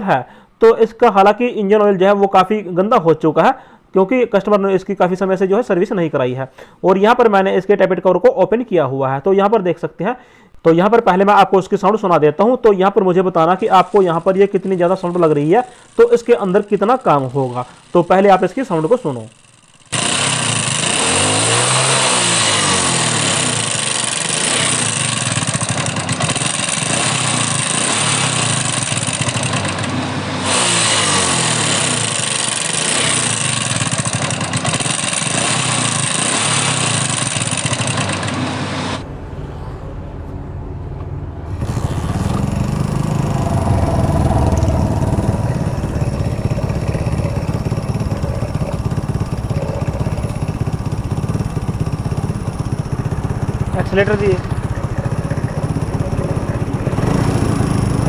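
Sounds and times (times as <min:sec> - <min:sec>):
motorcycle engine mechanical noise: 0:13.5 - 0:39.1, 0:41.0 - 0:58.0.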